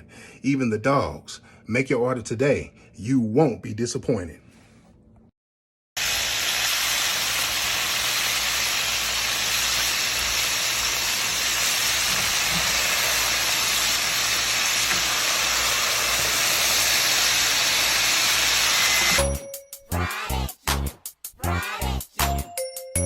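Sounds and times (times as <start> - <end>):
chicken sizzling in hot oil: 6.0 - 19.2.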